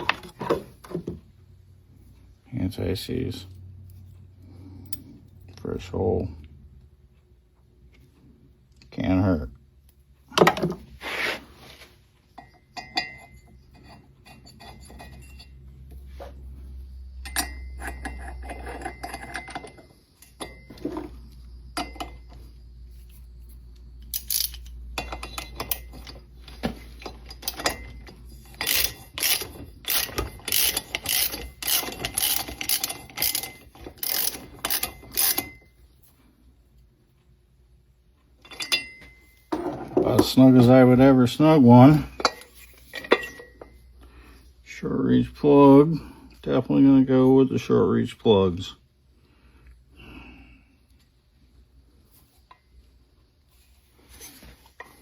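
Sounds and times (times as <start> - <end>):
tool handling noise: 0.0 - 1.3, 10.3 - 16.5, 17.2 - 35.8, 38.3 - 41.0, 41.8 - 43.8
ratchet wrench clicking: 24.0 - 26.1, 27.3 - 35.6.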